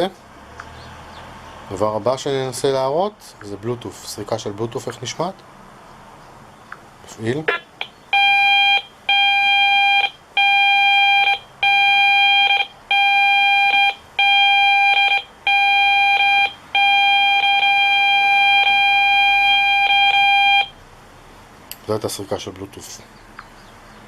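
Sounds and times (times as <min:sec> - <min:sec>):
meter speaker buzzing tone: 0:07.5 - 0:20.8.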